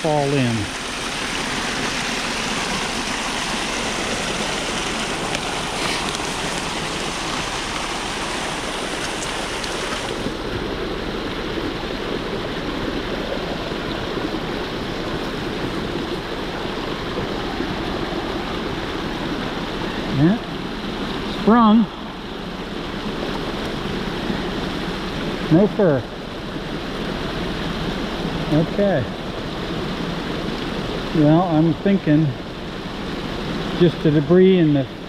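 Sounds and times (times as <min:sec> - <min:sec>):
water rushing through dam: 0:00.0 - 0:35.0.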